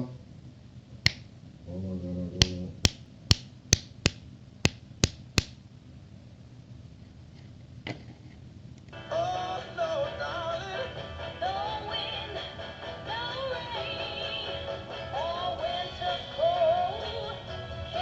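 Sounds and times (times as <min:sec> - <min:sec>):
finger snaps: 0:01.0 - 0:01.3, 0:02.4 - 0:05.6.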